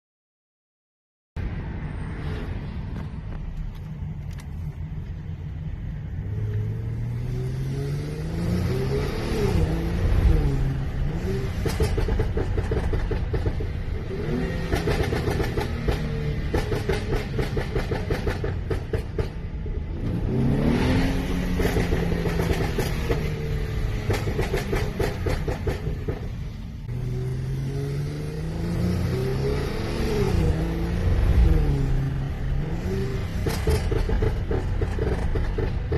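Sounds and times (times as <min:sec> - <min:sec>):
car engine accelerating: 0:02.2 - 0:35.9
exhaust crackles and bangs: 0:11.4 - 0:19.6, 0:21.4 - 0:26.6, 0:33.2 - 0:35.9.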